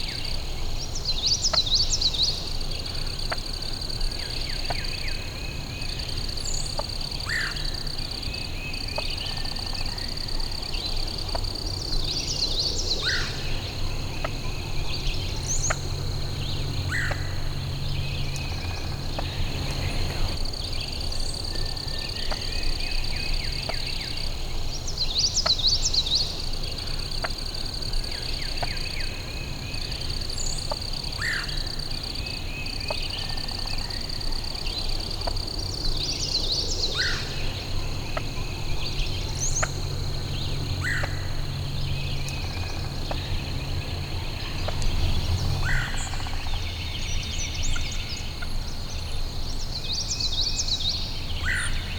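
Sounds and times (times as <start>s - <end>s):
birds calling and singing: 0.0s - 51.9s
high trill of frogs or insects: 9.2s - 20.5s, 25.4s - 48.0s.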